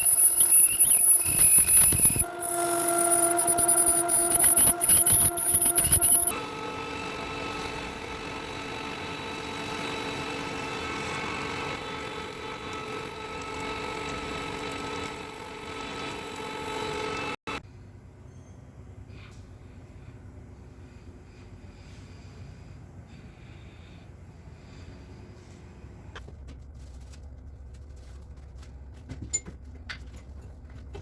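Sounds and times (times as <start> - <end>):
lathe cutting with ringing tones: 0.0 - 17.4
metal lathe humming: 0.0 - 17.4
faint hum: 0.0 - 26.2.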